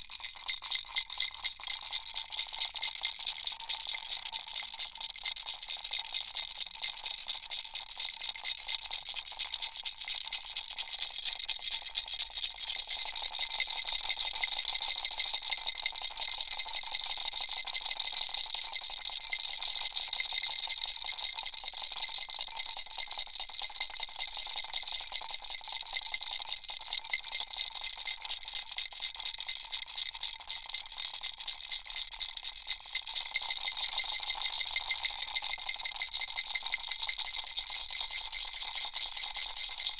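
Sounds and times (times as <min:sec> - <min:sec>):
baby rattle shaking: 0:00.0 - 0:01.7, 0:26.9 - 0:39.9.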